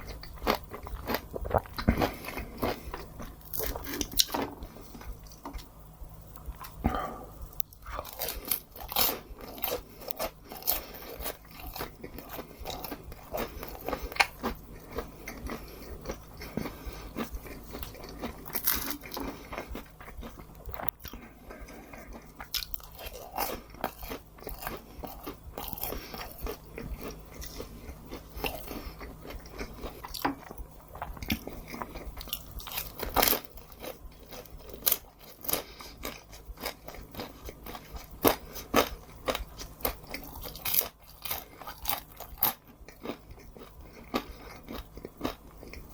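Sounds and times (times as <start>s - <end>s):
crunchy bites and chewing: 0.0s - 45.9s.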